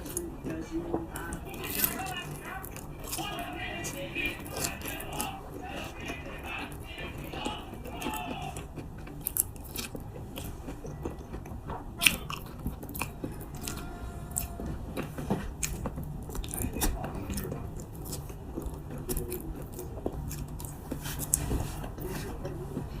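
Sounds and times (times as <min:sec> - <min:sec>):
person chewing: 0:00.0 - 0:23.0
mouth clicks and smacks: 0:04.2 - 0:13.8.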